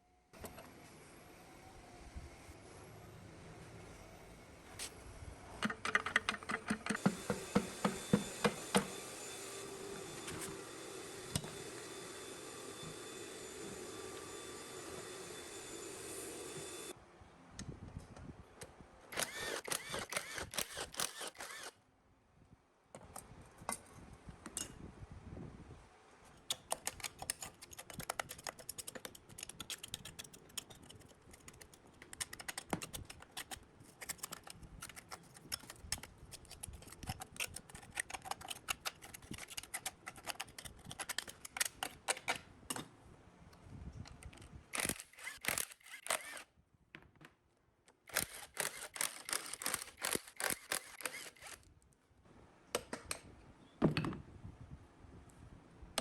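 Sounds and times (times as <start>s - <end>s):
hand tools clicking and tapping: 5.6s - 8.9s, 26.4s - 42.9s
tool scraping metal: 6.7s - 12.0s.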